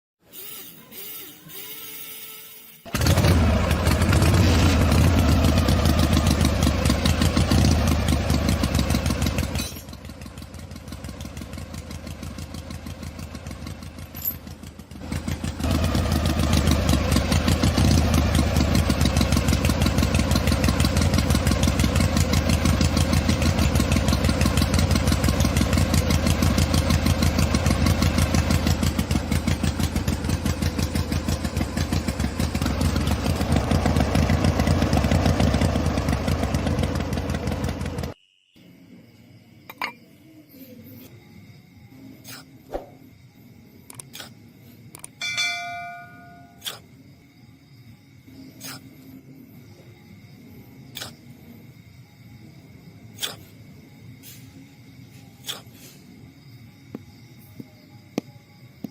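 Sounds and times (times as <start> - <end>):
small motor pulsing and humming: 0.3 - 2.6.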